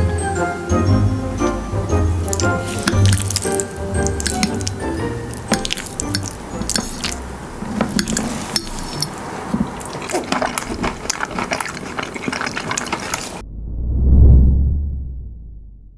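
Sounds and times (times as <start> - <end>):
background music: 0.0 - 7.5.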